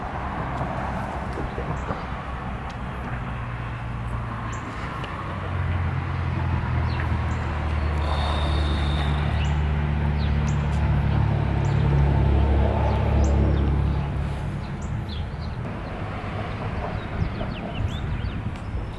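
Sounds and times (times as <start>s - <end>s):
small birds chirping: 6.9s - 10.8s.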